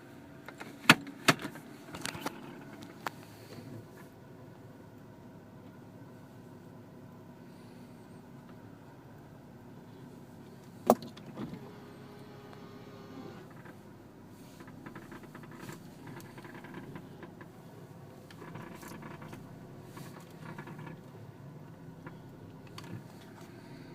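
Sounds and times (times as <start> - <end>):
car clicking and creaking: 0.4 - 4.2, 10.4 - 23.9.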